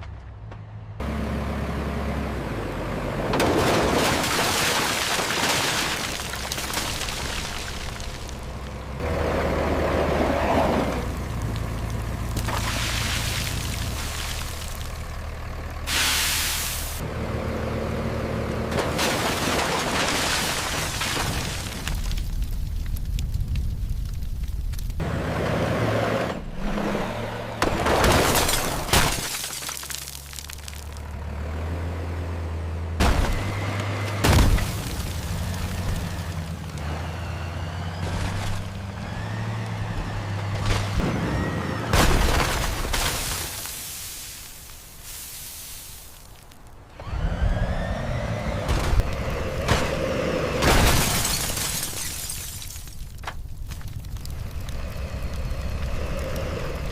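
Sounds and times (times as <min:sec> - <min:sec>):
heavy vehicle engine rumbling: 0:00.0 - 0:04.3, 0:06.1 - 0:20.0, 0:20.7 - 0:28.9, 0:29.9 - 0:51.7, 0:52.5 - 0:56.9
rough mechanical noise: 0:46.2 - 0:50.8.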